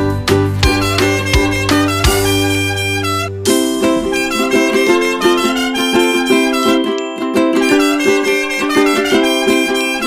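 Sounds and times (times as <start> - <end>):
plucked string tune: 0.0 - 10.0.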